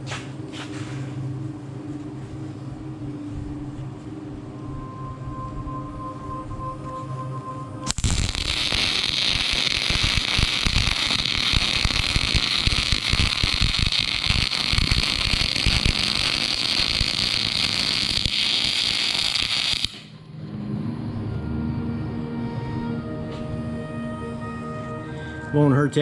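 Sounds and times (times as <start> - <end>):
welder arc crackling: 7.9 - 20.1.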